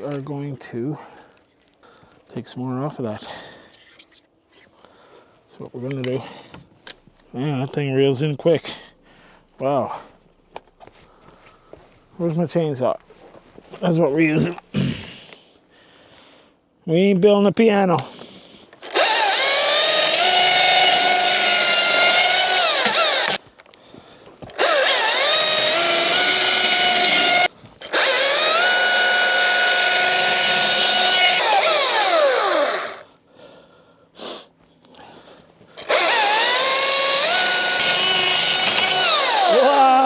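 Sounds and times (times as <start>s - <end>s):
chainsaw cutting lumber: 18.0s - 23.4s, 24.4s - 33.1s, 35.8s - 40.0s.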